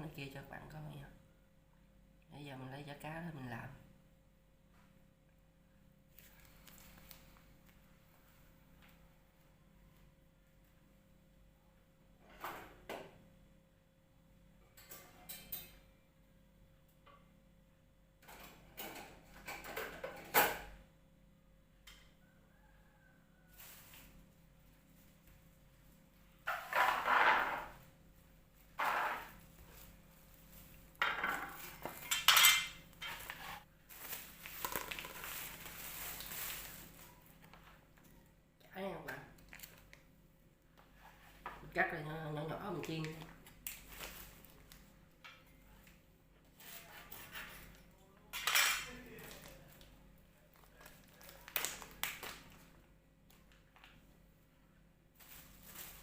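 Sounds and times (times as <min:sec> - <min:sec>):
dishes and cutlery clattering: 0:31.0 - 0:33.3, 0:48.4 - 0:48.9.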